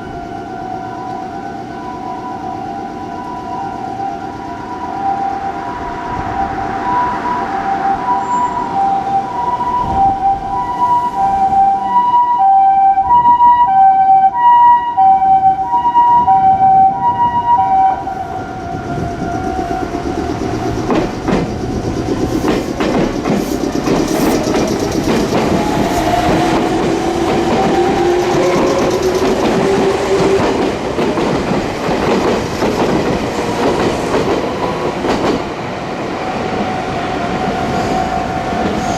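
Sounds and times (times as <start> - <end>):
ambulance siren two-tone wail: 0.0 - 20.3, 25.4 - 30.6
train whine: 0.0 - 38.9
train wheels clacking over rail joints: 18.9 - 35.6.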